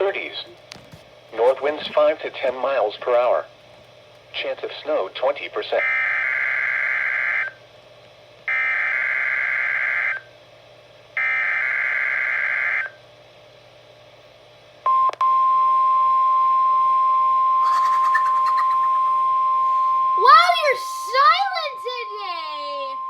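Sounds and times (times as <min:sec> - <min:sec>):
screechy digital data bursts: 0:17.6 - 0:19.8.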